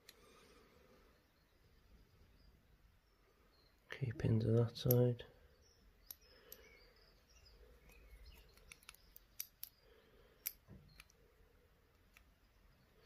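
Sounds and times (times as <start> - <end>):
tweezers clicking on metal pins: 4.8 - 5.1, 7.8 - 9.8.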